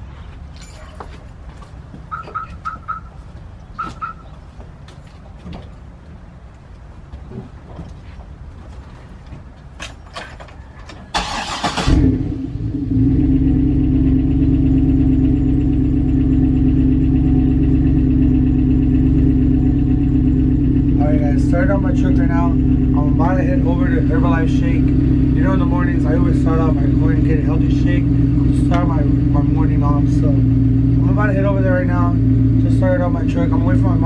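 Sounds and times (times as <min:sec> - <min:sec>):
starter cranking engine: 0:11.1 - 0:12.2
truck engine idling: 0:13.4 - 0:34.0.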